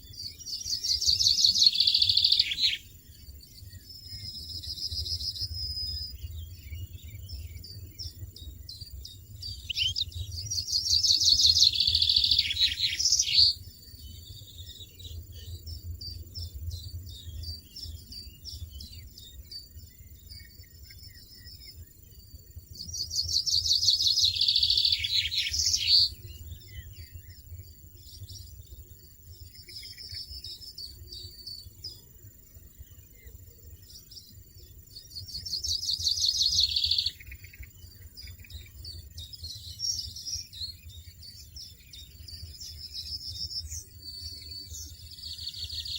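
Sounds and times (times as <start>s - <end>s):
faint chirping: 0.0s - 45.9s.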